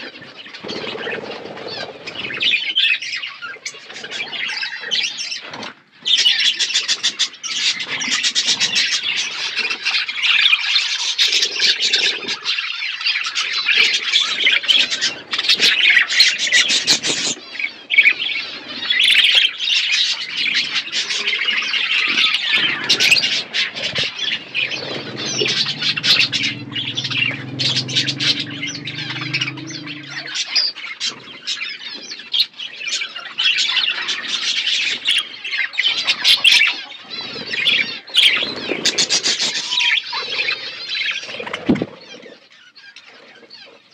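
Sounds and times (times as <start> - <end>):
budgerigars chattering and squawking: 0.0 - 43.0.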